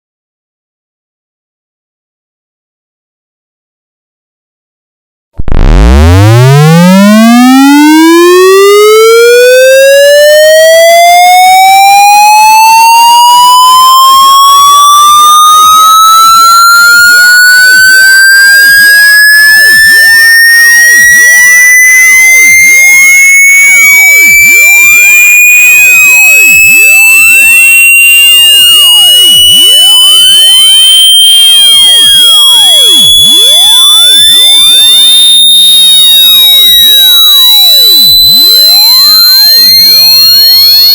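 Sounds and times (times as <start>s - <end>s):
synthetic buzzy tone sweeping upward: 5.4s - 37.4s.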